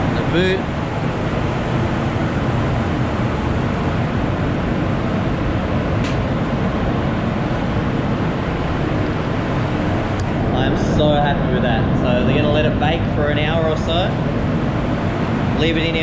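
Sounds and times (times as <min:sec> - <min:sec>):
fans rushing air: 0:00.0 - 0:16.0.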